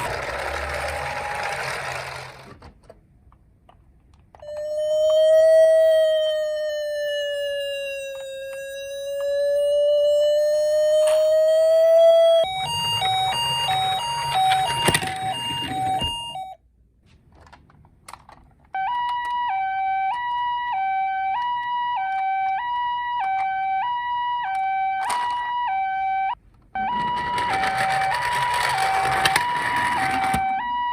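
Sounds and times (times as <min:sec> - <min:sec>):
toy electronic siren: 0:04.4 - 0:16.6, 0:18.8 - 0:30.9.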